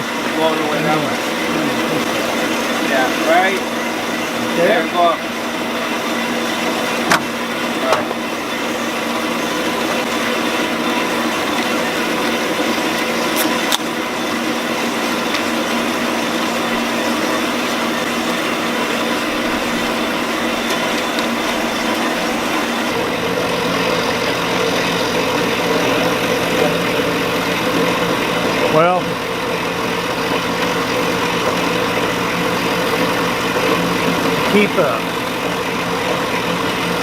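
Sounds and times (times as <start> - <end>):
tractor engine idling: 13.7 - 28.4.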